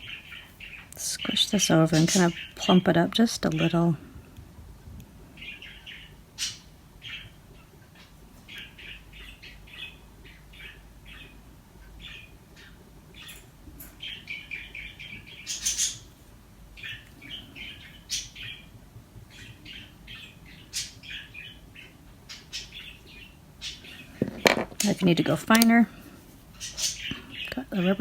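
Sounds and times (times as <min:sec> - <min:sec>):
small bird chirping: 0:05.4 - 0:16.1.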